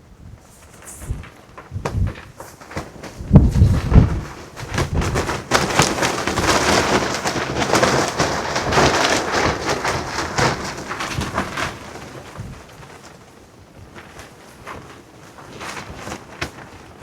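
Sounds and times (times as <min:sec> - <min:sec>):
wind buffeting microphone: 0:00.0 - 0:13.0
clothing flapping in wind: 0:00.0 - 0:17.0.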